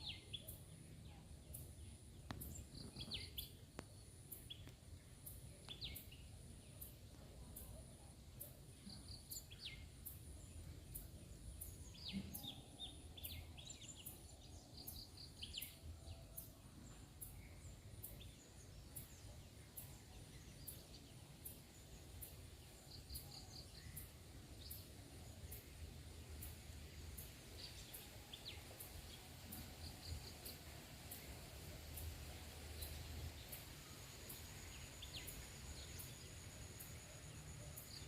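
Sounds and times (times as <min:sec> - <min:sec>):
small birds chirping: 0:00.0 - 0:38.0
high insect-like hiss: 0:21.5 - 0:38.0.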